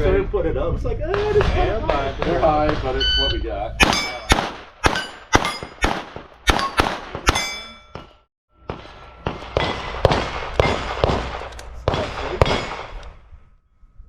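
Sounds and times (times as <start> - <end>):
steel target ringing: 3.2 - 5.9, 6.5 - 8.2
rifle shots: 3.8 - 7.5, 8.6 - 13.1.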